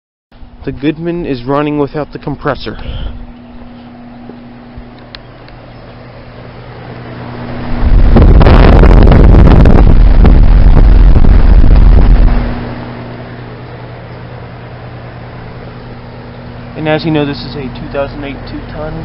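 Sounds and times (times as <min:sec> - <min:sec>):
heat pump unit humming: 0:00.3 - 0:19.0
loud rushing noise: 0:06.8 - 0:13.6.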